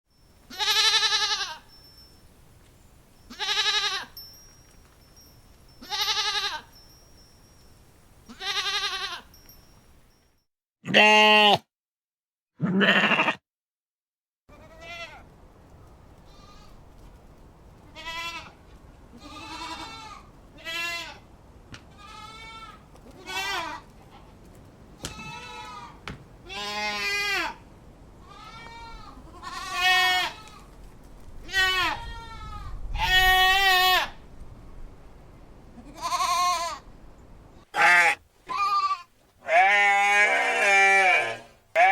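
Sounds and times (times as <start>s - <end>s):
goat bleating: 0.5s - 1.6s, 3.3s - 4.1s, 5.8s - 6.7s, 8.3s - 9.3s, 10.9s - 11.6s, 12.6s - 13.4s, 14.5s - 15.2s, 18.0s - 21.2s, 21.9s - 24.2s, 25.0s - 27.6s, 28.2s - 30.7s, 31.5s - 34.1s, 35.8s - 36.8s, 37.7s - 41.9s.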